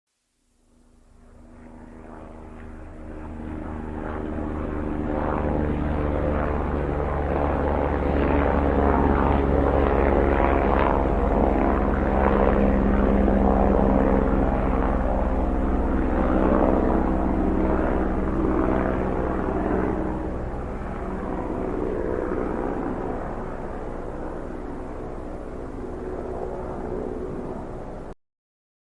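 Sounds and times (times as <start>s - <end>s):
helicopter rotor and engine: 0.8s - 28.2s.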